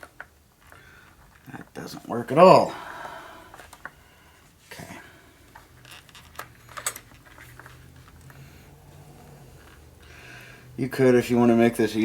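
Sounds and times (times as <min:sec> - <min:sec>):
plastic and rubber parts clicking: 0:05.4 - 0:10.1.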